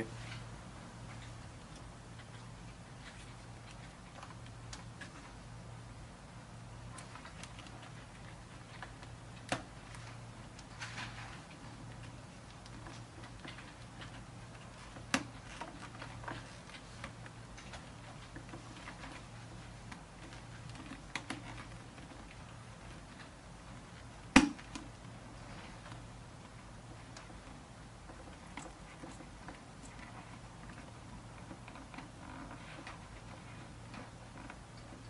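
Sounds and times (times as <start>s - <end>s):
low steady hum: 0.0s - 35.0s
sharp plastic snap: 24.3s - 24.8s.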